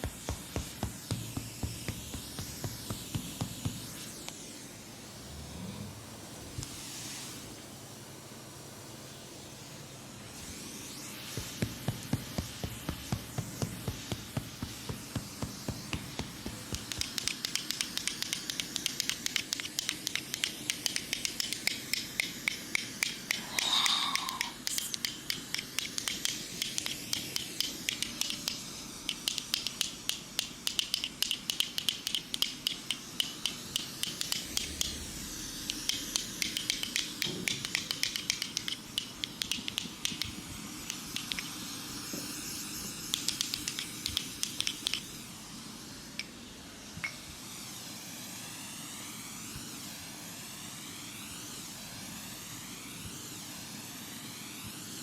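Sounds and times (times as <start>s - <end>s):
scratching and tapping clicks: 0.0s - 4.0s, 11.3s - 35.0s, 35.6s - 41.6s, 43.0s - 45.1s
soft hiss: 0.0s - 55.0s.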